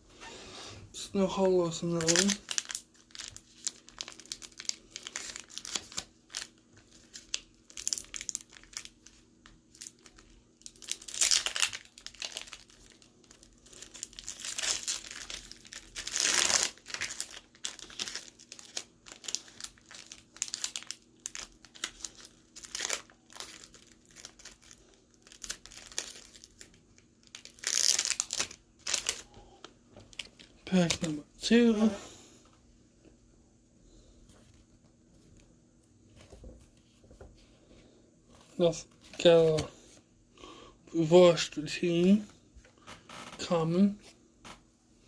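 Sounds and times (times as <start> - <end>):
foil wrapper crinkling: 1.6 - 29.3, 30.1 - 31.2.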